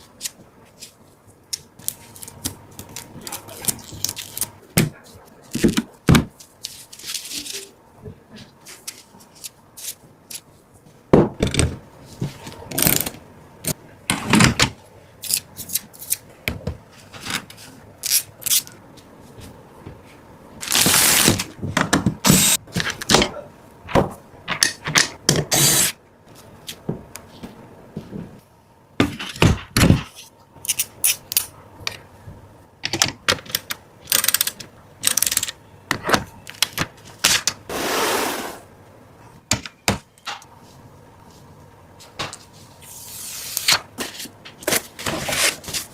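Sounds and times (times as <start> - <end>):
computer parts clicking and knocking: 32.8 - 37.6.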